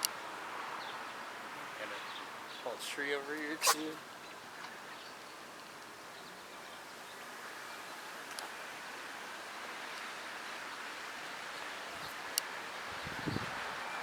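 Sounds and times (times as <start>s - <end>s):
steady outdoor hiss: 0.0s - 14.0s
small tick: 8.3s - 8.5s.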